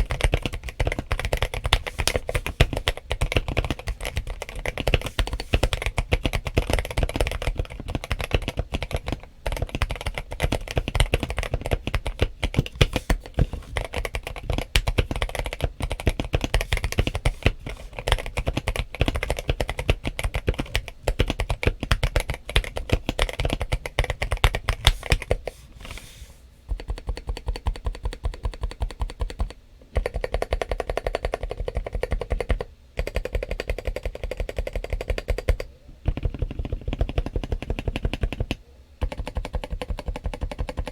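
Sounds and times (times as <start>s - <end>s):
fast mechanical keyboard typing: 0.0s - 25.4s, 26.8s - 40.9s.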